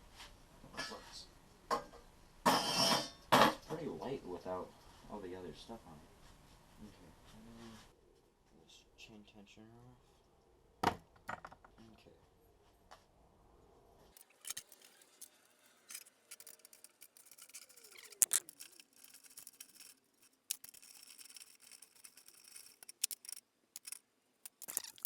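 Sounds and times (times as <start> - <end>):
hand tools clicking and clinking: 14.2 - 25.0.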